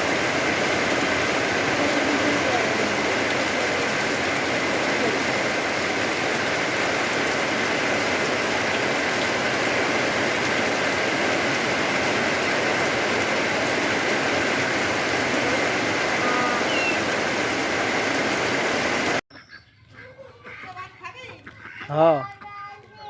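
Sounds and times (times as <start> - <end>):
steady rain falling: 0.0 - 19.2.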